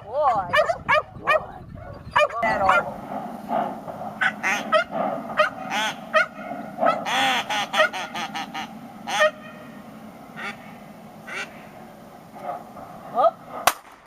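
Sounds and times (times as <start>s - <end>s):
dog yelping: 0.4s - 3.0s, 4.2s - 9.7s.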